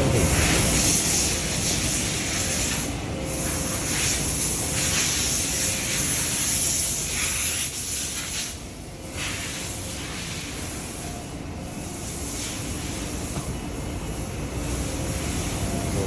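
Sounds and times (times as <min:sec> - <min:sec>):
low machinery rumble: 0:00.0 - 0:00.8.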